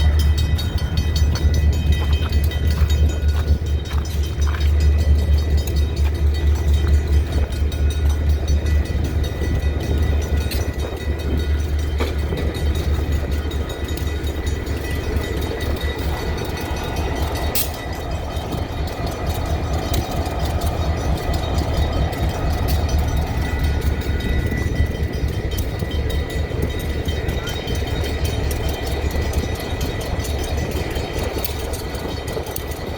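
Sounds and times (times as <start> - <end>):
diesel locomotive idling: 0.0 - 32.9
scattered clicks: 27.5 - 32.9.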